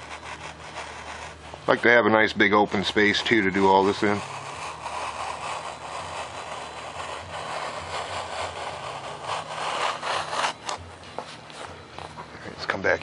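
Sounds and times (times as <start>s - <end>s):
knife scraping through foam: 0.0s - 1.6s, 2.8s - 10.8s
low hum: 0.0s - 12.6s.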